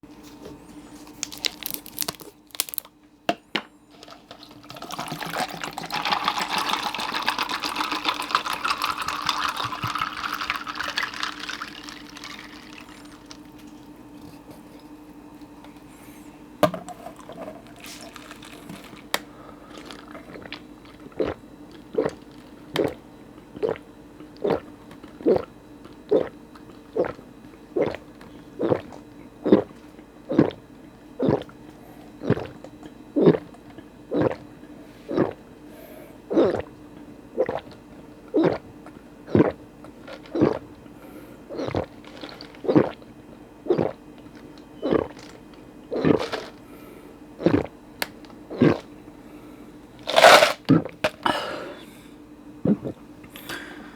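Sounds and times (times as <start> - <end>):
ice clinking in glass: 4.0 - 12.9
tea pouring into glass: 4.0 - 13.4
gulping: 19.7 - 25.5, 26.1 - 27.2, 27.8 - 30.6, 31.2 - 31.6, 32.2 - 32.6, 33.2 - 35.4, 36.3 - 36.8, 37.4 - 40.8, 41.5 - 43.0, 43.6 - 44.0, 44.8 - 45.3, 45.9 - 46.6, 47.4 - 47.7, 48.5 - 48.9, 50.6 - 51.1, 52.6 - 53.0.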